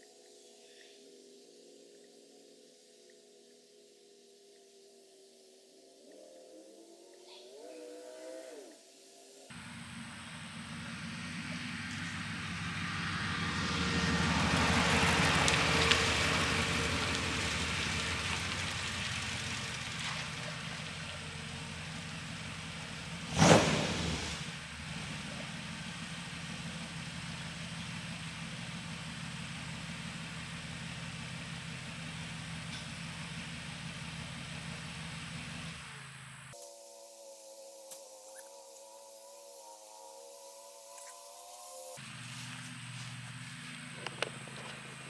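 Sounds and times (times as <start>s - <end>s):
race car engine running: 9.5s - 36.6s, 42.0s - 45.0s
sharp loud engine burst: 21.9s - 27.0s.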